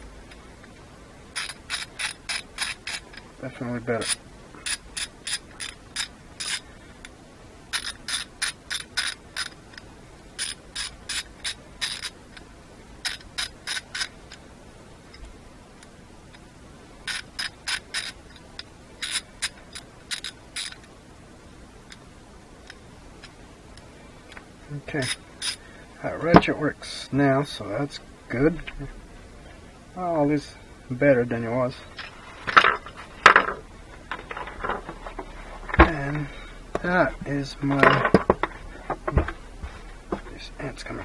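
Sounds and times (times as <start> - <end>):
ratchet clicking: 1.4 - 3.2, 4.0 - 6.6, 7.7 - 12.2, 13.0 - 14.4, 17.0 - 20.9, 25.0 - 25.6.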